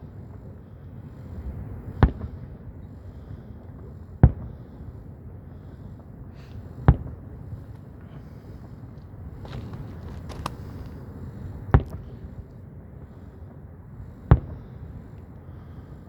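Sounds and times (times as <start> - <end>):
low background rumble: 0.0 - 16.0.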